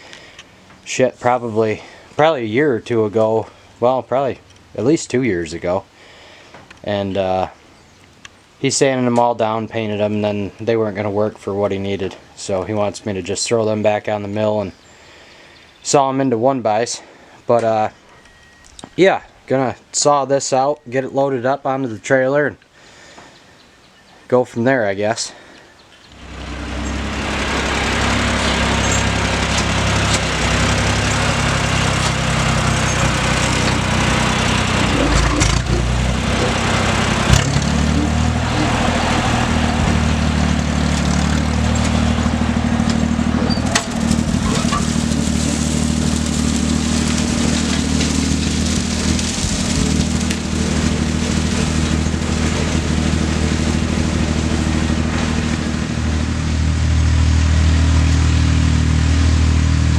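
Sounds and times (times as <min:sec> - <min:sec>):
small engine running: 0:26.2 - 0:59.9.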